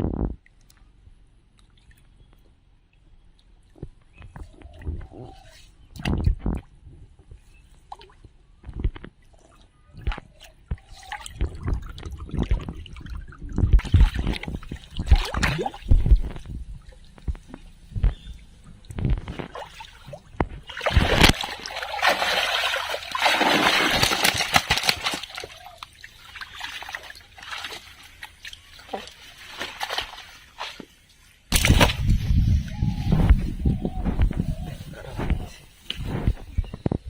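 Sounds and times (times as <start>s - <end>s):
pond water splashing: 9.1s - 32.9s
low thumps: 13.5s - 19.6s.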